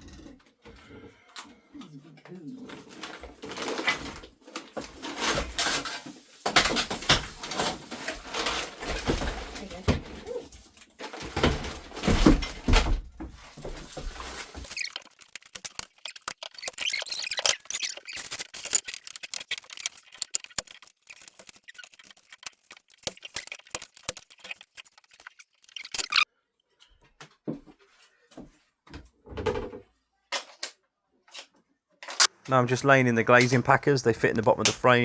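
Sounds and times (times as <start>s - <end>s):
small clicks and squeaks: 13.8s - 27.0s.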